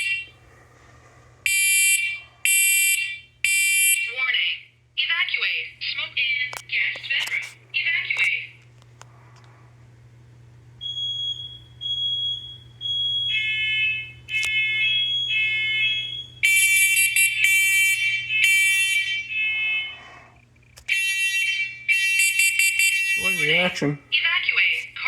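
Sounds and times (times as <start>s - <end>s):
smoke alarms beeping: 0.0s - 0.4s, 1.5s - 4.5s, 10.8s - 24.1s.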